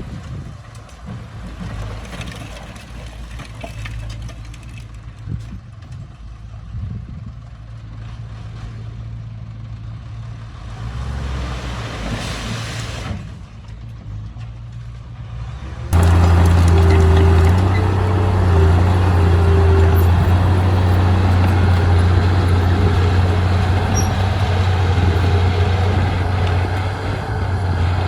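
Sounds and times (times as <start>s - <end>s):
diesel engine running: 16.0s - 28.0s.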